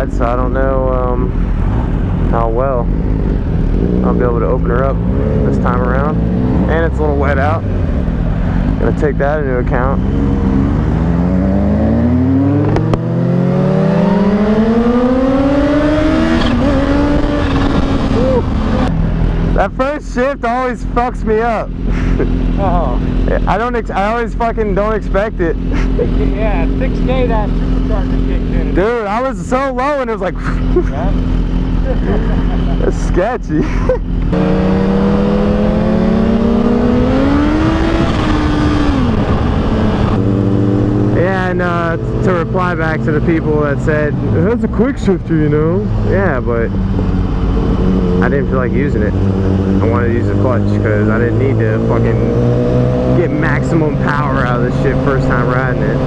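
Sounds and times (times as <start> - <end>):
motorcycle engine accelerating: 0.0 - 56.0
wind noise: 9.9 - 19.6, 33.7 - 41.2.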